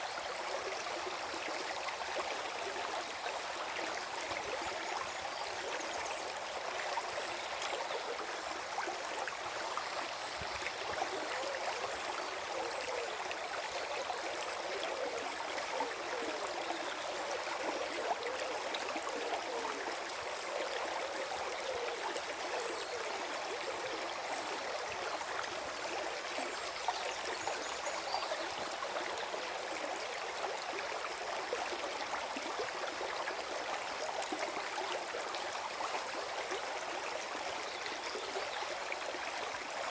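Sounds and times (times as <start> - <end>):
stream gurgling over stones: 0.0 - 39.9.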